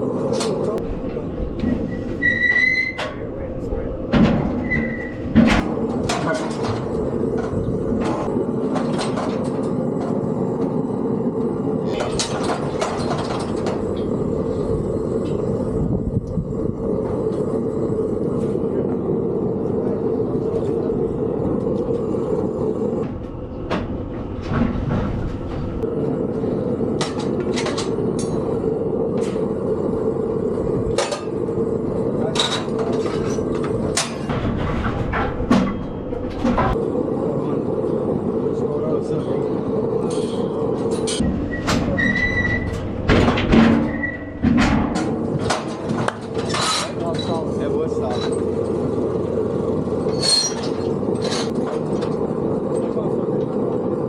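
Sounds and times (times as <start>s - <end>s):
mechanical hum with rumble: 0.0s - 54.0s
metal clanks and knocks: 4.0s - 10.2s, 11.9s - 14.1s, 23.0s - 25.8s, 32.3s - 36.8s, 40.1s - 47.5s.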